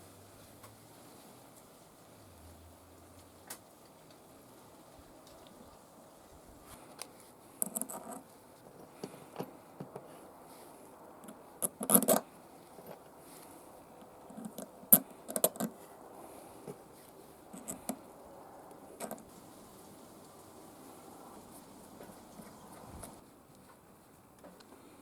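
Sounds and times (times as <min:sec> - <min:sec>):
small parts and tools handled: 0:06.8 - 0:10.2.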